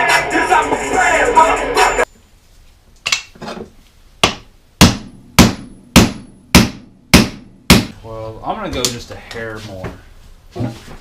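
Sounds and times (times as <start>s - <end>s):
hammer striking metal: 4.2s - 7.9s.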